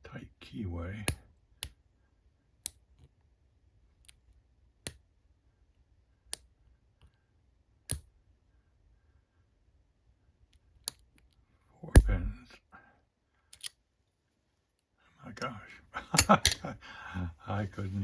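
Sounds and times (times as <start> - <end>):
lock pick clicking in padlock: 13.5 - 13.8.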